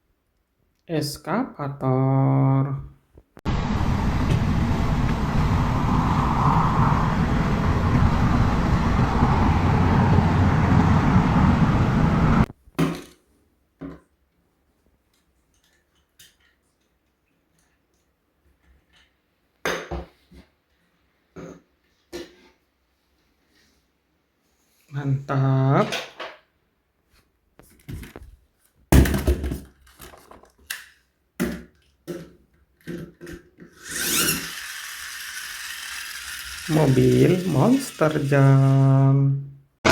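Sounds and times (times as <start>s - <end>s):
engine-like rumble: 3.5s - 12.5s
plastic toy knocks and clatters: 28.9s - 33.8s
mechanical whirr: 33.8s - 38.8s.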